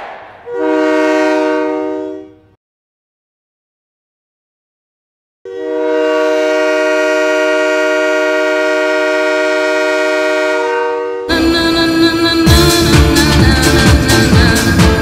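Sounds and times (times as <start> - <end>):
air horn chord: 0.0 - 2.6, 5.5 - 12.7.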